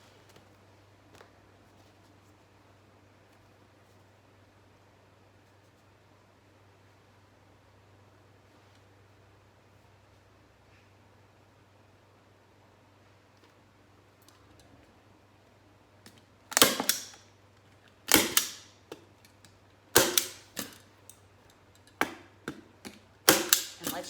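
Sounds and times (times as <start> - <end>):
staple gun firing: 16.5 - 17.2, 18.1 - 18.8, 20.0 - 20.8, 23.3 - 24.0.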